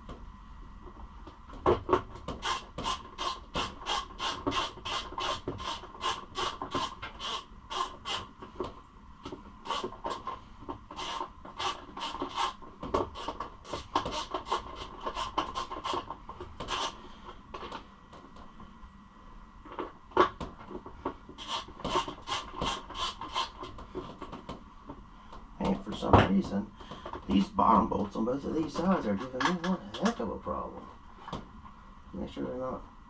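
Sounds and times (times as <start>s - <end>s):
ratchet wrench rasping: 2.4s - 8.3s, 9.7s - 10.2s, 10.9s - 17.0s, 21.4s - 23.7s.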